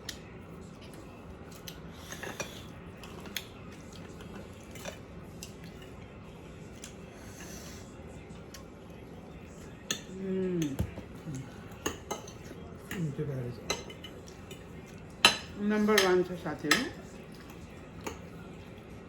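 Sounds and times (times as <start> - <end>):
cutlery clinking against plate: 0.0 - 6.0, 9.5 - 18.4
low background hum: 0.0 - 19.0.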